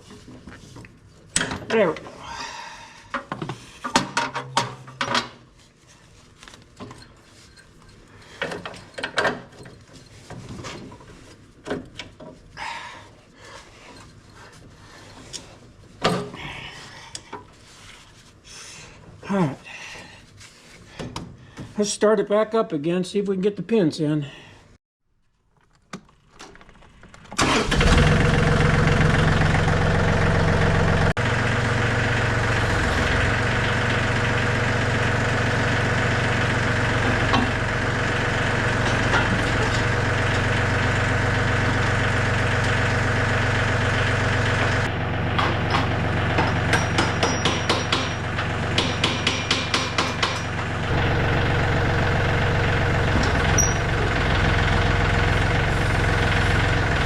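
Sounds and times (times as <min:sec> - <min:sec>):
tractor diesel engine idling: 0:27.4 - 0:57.0.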